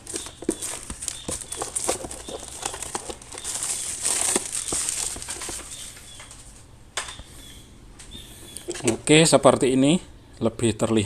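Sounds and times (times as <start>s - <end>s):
plastic packaging crinkling: 0.0s - 6.6s.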